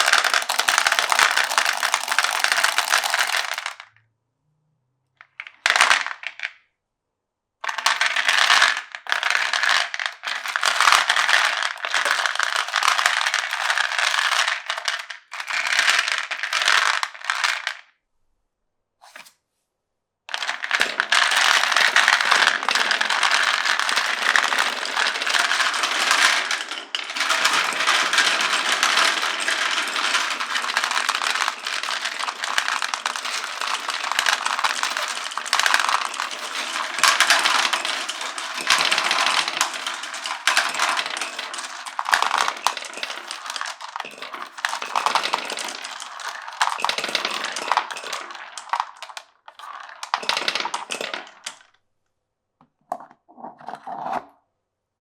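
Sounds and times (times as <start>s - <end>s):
glass marbles rattling down wooden run: 0.0s - 3.8s, 5.5s - 6.5s, 7.7s - 17.8s, 20.3s - 51.7s.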